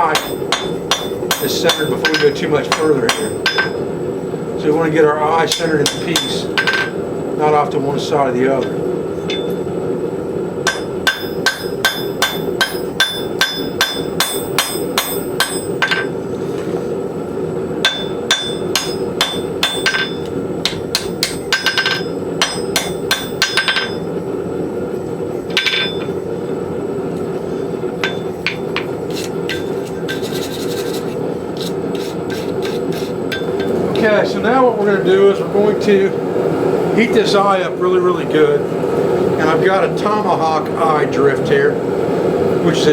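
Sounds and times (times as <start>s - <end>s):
hammer ringing on hot steel: 0.0s - 3.9s, 5.4s - 7.0s, 8.6s - 9.7s, 10.6s - 16.2s, 17.8s - 24.2s, 25.5s - 26.3s, 27.6s - 30.2s, 31.6s - 34.0s.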